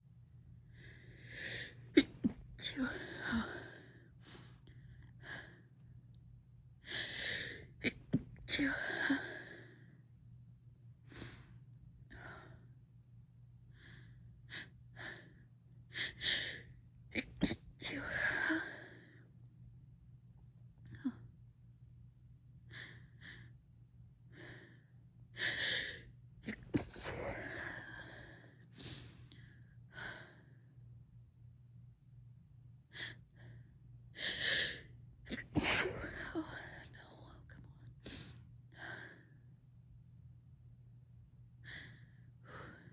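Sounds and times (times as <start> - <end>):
stifled sneeze: 35.3 - 36.4.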